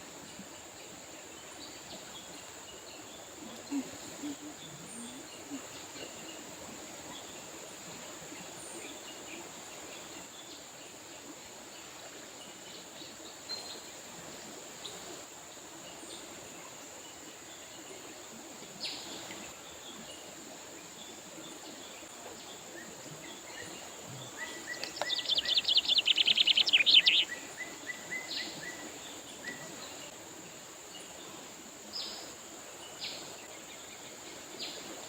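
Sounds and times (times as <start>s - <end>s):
river water running: 0.0s - 35.0s
insect buzz: 23.5s - 35.0s
songbird trilling: 24.4s - 28.4s
bird call notes: 24.6s - 27.4s.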